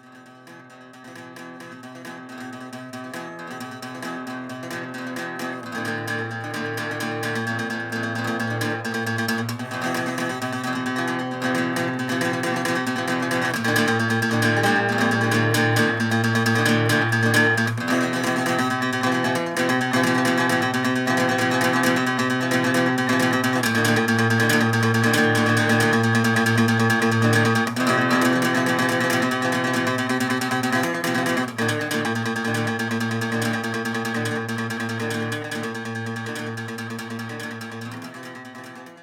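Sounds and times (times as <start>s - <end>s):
acoustic guitar plucked and strummed: 0.0s - 39.0s.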